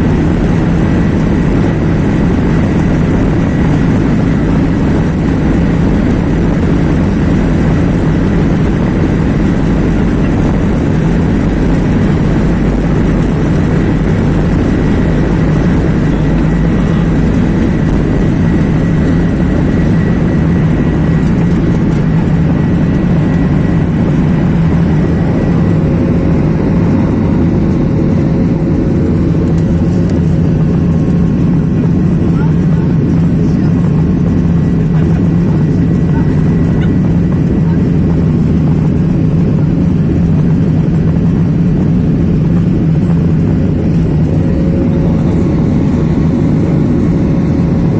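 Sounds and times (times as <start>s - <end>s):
airliner cabin engine noise: 0.0s - 47.9s.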